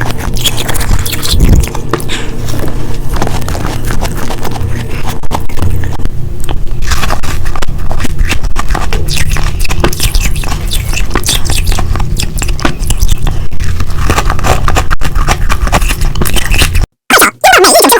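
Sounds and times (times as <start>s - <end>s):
crunching frost being chewed: 0.0s - 16.9s.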